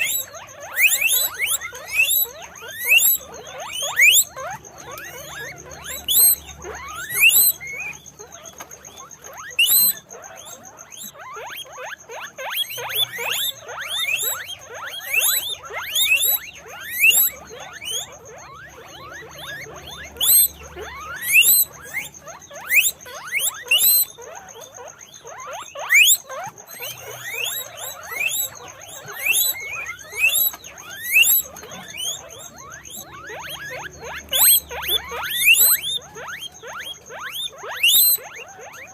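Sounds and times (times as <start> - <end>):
guinea pigs squealing: 0.0 - 38.9.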